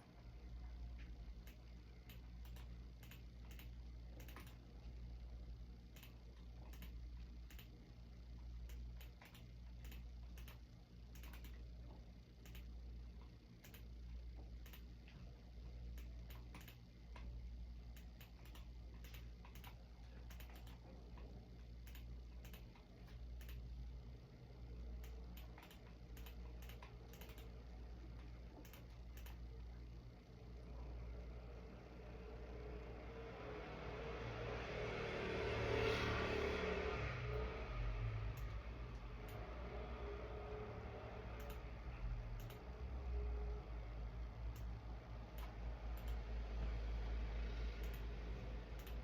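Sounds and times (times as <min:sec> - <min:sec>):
steady low hum: 0:00.0 - 0:49.0
keyboard typing: 0:01.4 - 0:04.6, 0:05.9 - 0:07.8, 0:08.7 - 0:11.6, 0:13.6 - 0:13.9, 0:16.0 - 0:17.3, 0:18.0 - 0:23.7, 0:25.0 - 0:29.4, 0:41.4 - 0:41.6.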